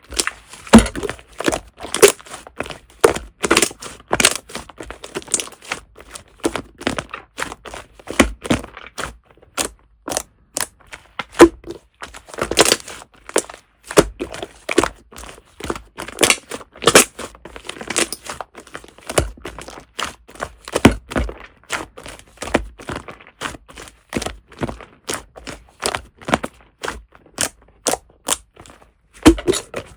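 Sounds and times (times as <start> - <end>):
foam slime squeezed by hand: 0.0 - 10.7.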